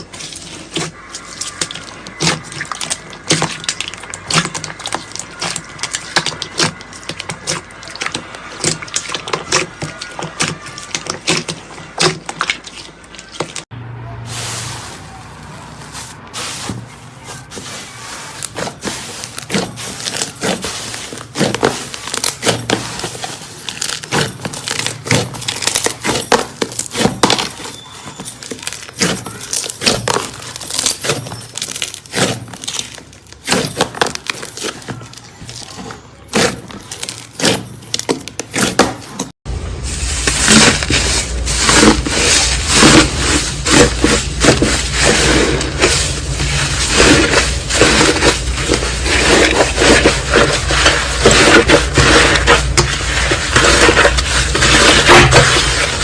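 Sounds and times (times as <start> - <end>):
slime crunching: 0.0 - 13.7, 14.4 - 56.0
slime squished sticky crackles: 0.0 - 13.7, 15.8 - 38.8.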